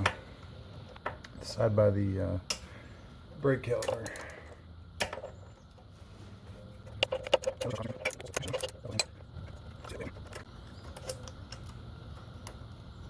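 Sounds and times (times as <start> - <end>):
metal tools clinking: 6.8 - 9.2.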